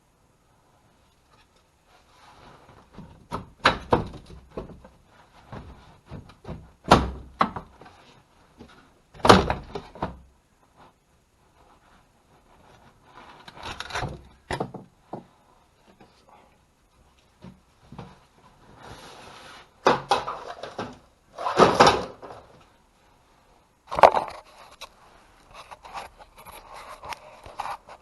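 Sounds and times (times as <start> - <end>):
irregular knocks and thuds: 2.8 - 7.9, 14.1 - 15.4.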